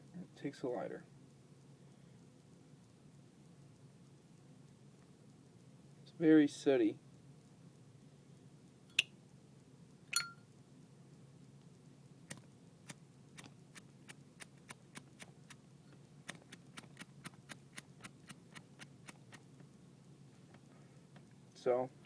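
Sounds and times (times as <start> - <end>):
faint uneven ticks: 11.4 - 19.7.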